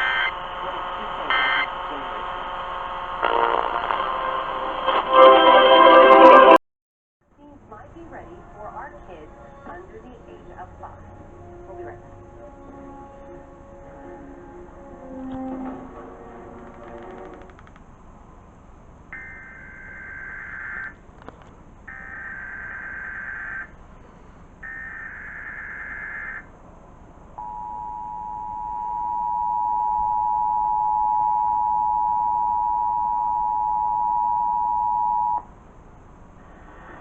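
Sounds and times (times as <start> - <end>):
two-tone attention signal: 27.4 - 35.4.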